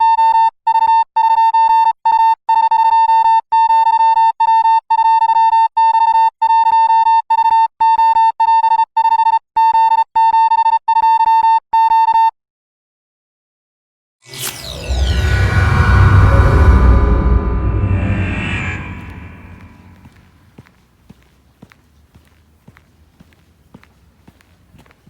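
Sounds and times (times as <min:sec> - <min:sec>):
electronic beep tone: 0:14.3 - 0:20.0
deep bass boom: 0:14.3 - 0:20.3
falling whoosh: 0:14.3 - 0:20.3
dark music: 0:14.3 - 0:20.4.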